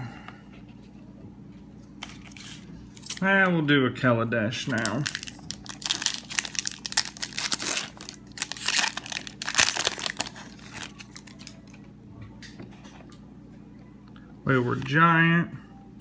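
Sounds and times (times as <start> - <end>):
foil wrapper tearing and crinkling: 2.0 - 3.2, 4.6 - 11.8.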